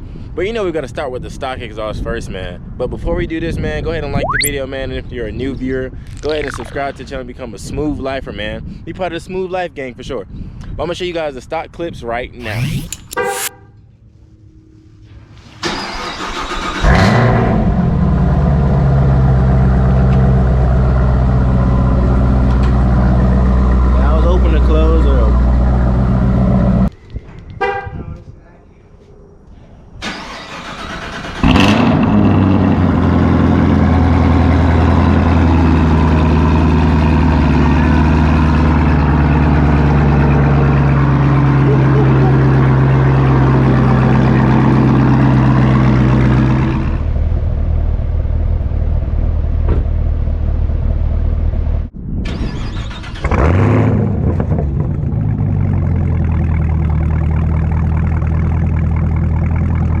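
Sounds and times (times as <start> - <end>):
car engine starting and idling: 15.6 - 26.9, 30.0 - 60.0.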